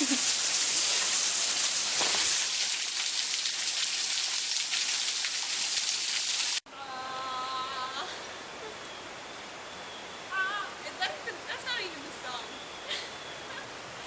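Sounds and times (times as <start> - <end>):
small waterfall splashing: 0.0 - 6.7.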